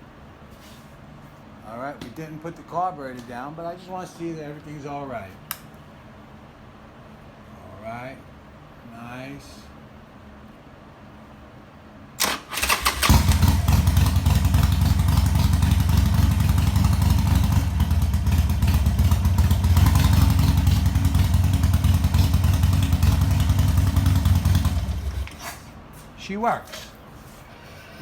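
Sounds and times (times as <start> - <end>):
motorcycle starter cranking: 12.2 - 25.6
motorcycle engine running: 12.9 - 25.4.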